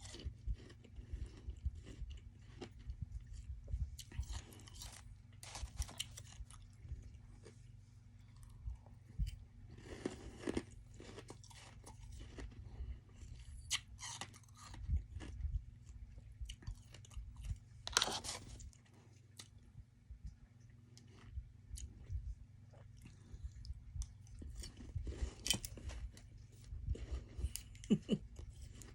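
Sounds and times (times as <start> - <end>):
chewing ice crunches: 0.0 - 7.6, 9.8 - 15.4, 24.2 - 26.3
steady low hum: 0.0 - 28.9.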